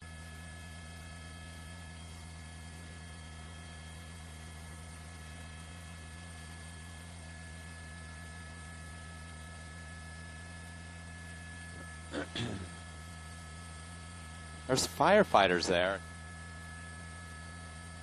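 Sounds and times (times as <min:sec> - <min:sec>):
electrical hum: 0:00.0 - 0:18.0
faint high whining tones: 0:00.2 - 0:18.0.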